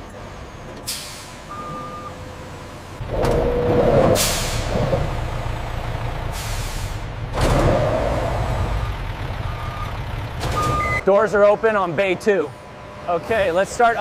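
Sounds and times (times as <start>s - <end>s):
truck engine rumbling: 0.0s - 14.0s
air brakes hissing: 0.8s - 1.6s, 4.1s - 4.9s, 6.3s - 7.1s
short beep: 10.6s - 11.0s.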